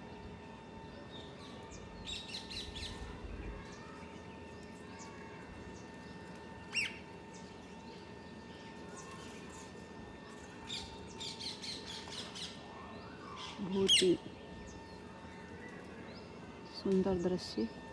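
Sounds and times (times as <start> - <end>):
parrots and small birds chirping: 6.7 - 7.0, 13.3 - 14.2.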